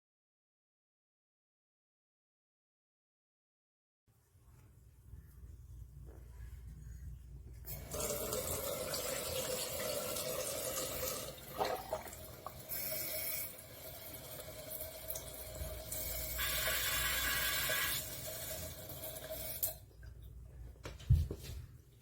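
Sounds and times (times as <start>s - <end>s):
faucet water running into sink: 7.7s - 19.8s.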